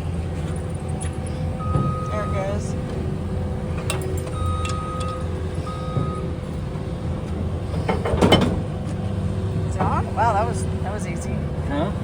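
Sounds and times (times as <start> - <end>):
vehicle engine idling: 0.0 - 12.0
single-pitch beep: 1.6 - 2.5, 4.4 - 6.3
trailer coupler clunking onto hitch: 3.7 - 6.3.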